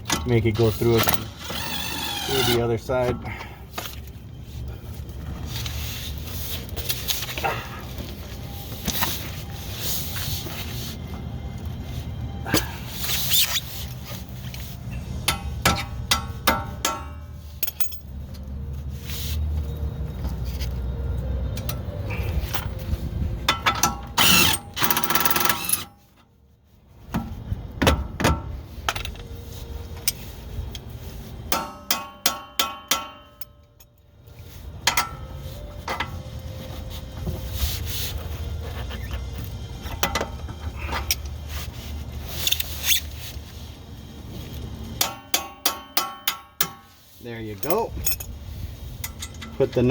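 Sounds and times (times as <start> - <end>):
metal bar hammering a bolt: 15.2 - 18.0, 23.5 - 25.9, 31.5 - 33.6, 45.0 - 46.9.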